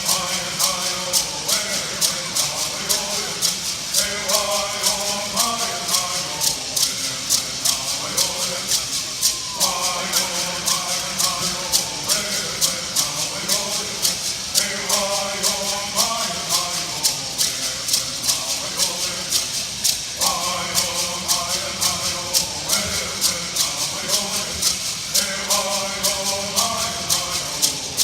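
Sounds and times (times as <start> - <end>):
gourd rattles shaken: 0.0 - 28.0
people singing in unison: 0.0 - 28.0.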